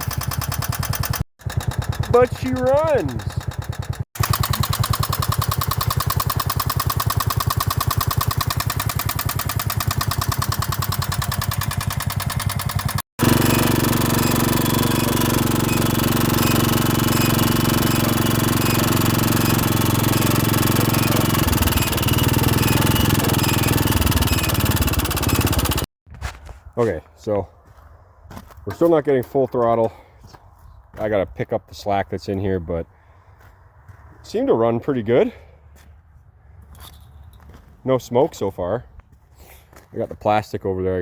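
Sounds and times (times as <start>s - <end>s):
single-cylinder engine running: 0.0s - 25.9s.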